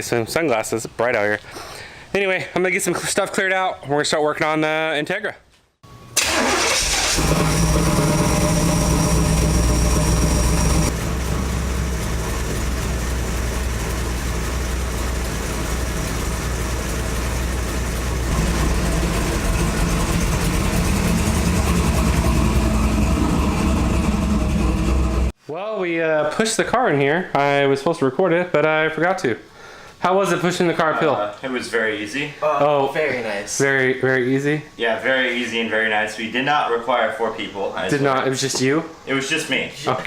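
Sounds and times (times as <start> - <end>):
car engine running: 6.2 - 25.3.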